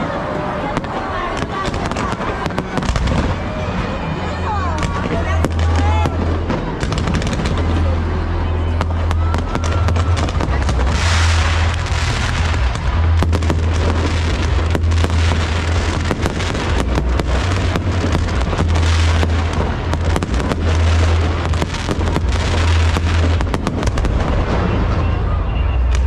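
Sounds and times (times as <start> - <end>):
fireworks cracks and pops: 4.8 - 8.0, 8.8 - 25.1
low rumble of booms: 8.8 - 26.0.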